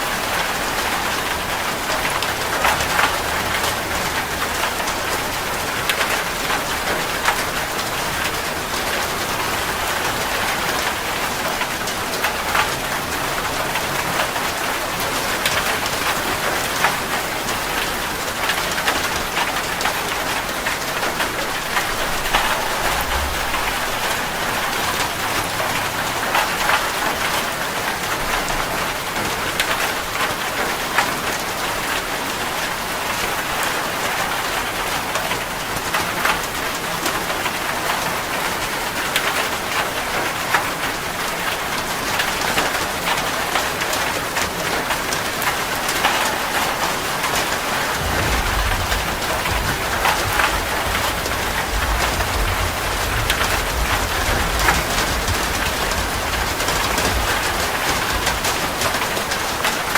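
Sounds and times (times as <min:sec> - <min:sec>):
steady rain falling: 0:00.0 - 0:59.9
low rumble: 0:21.3 - 0:26.9, 0:48.0 - 0:58.8.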